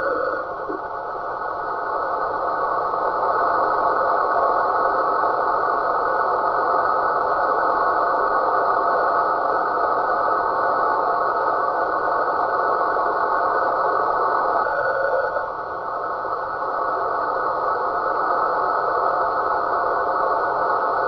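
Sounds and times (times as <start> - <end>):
radio static: 0.0 - 1.0, 14.6 - 15.5.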